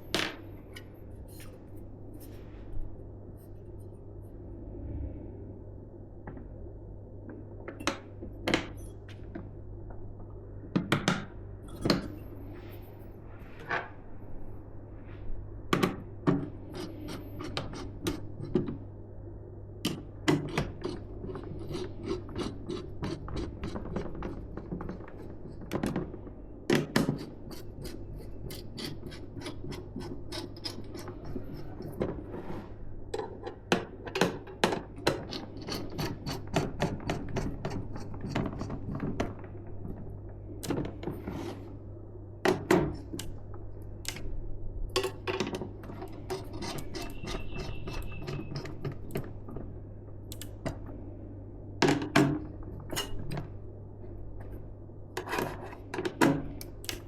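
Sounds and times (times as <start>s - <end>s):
steady low hum: 0.0s - 57.0s
rubbing and scraping: 27.6s - 32.9s.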